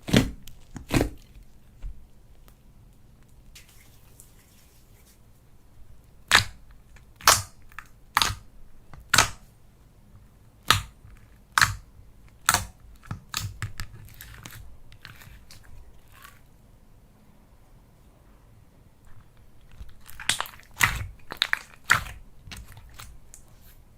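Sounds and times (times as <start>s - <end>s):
slime popping: 6.3s - 6.6s, 7.2s - 8.4s, 10.7s - 15.2s, 19.7s - 23.1s.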